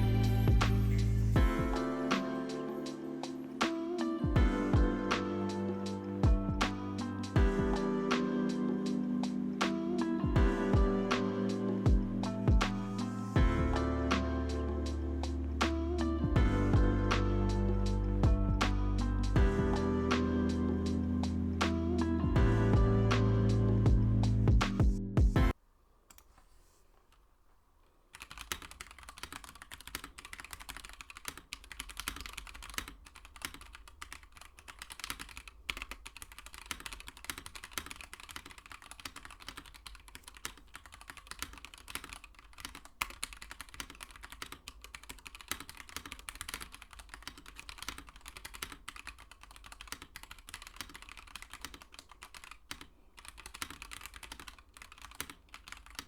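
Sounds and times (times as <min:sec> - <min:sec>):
mechanical keyboard typing: 0:28.1 - 0:56.0.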